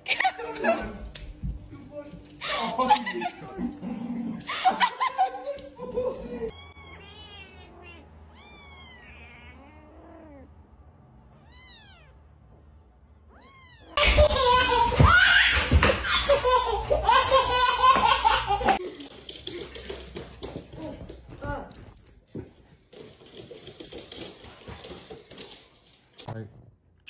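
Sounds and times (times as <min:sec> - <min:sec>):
cat meowing: 0:06.5 - 0:10.5, 0:11.3 - 0:12.3, 0:13.2 - 0:14.0.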